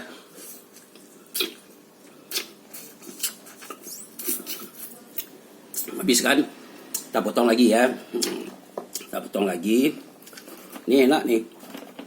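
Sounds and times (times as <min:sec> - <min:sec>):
wet mouth smacks and sucking: 0:00.8 - 0:01.6, 0:02.3 - 0:06.0.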